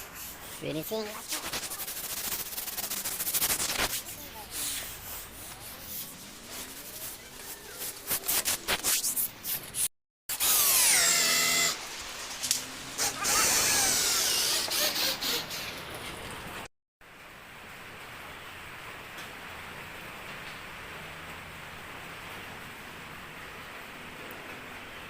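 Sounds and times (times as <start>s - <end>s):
power tools cutting wood: 10.3s - 15.6s.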